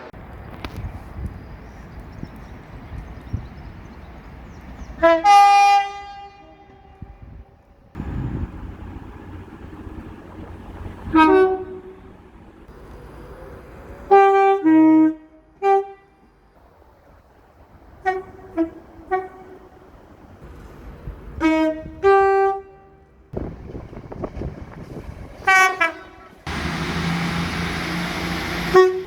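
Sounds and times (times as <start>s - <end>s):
train rumble: 0.0s - 29.0s
train two-tone horn blasts: 5.0s - 7.4s, 10.0s - 12.6s, 14.1s - 16.3s, 18.0s - 19.8s, 21.4s - 23.2s, 25.4s - 29.0s.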